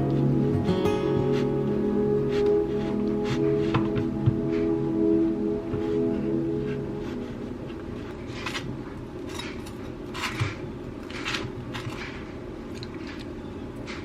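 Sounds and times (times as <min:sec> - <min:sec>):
steady low hum: 0:00.0 - 0:14.0
household scrapes and clatters: 0:08.0 - 0:12.4.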